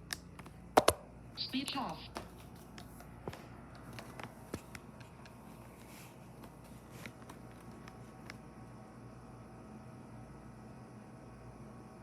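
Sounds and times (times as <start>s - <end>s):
air conditioner humming: 0.0s - 12.0s.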